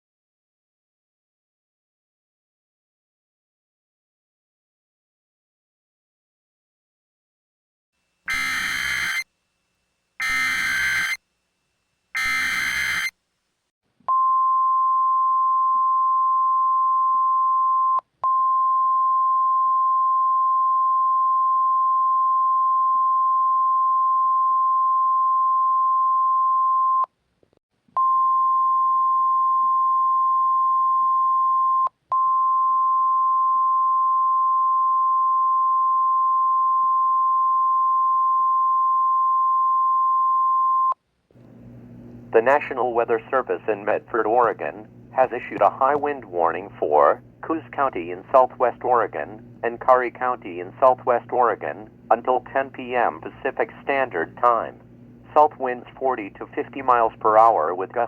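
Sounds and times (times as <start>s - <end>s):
buzzy data bursts: 8.3s - 9.2s, 10.2s - 11.2s, 12.2s - 13.1s
steady high warning beep: 8.3s - 9.2s, 10.2s - 11.2s, 12.2s - 13.1s.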